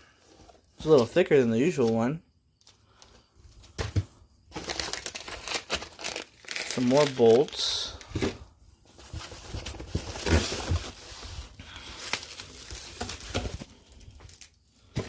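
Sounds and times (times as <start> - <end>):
small parts clicking and knocking: 4.5 - 8.4
packaging rustling: 9.0 - 14.5.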